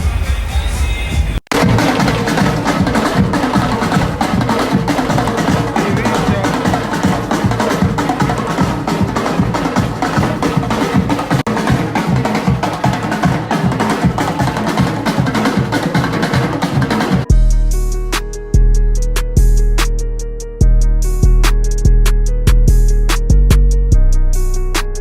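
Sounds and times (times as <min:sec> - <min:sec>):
music with fast drumming: 0:00.0 - 0:20.0.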